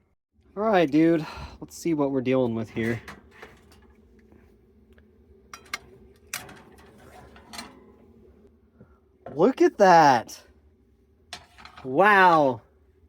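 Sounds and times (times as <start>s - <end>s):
oven door opening: 5.6s - 8.0s
baking pan clanking: 11.4s - 11.9s.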